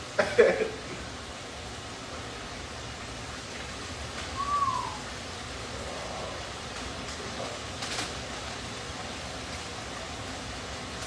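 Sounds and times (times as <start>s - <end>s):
low background hiss: 0.0s - 11.0s.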